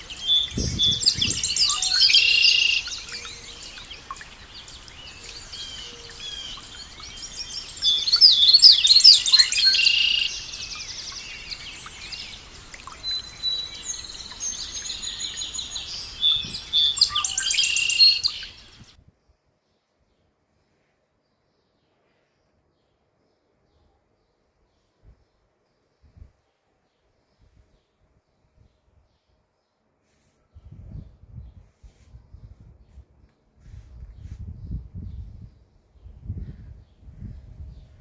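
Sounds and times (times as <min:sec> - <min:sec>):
songbirds singing: 0:00.0 - 0:19.3.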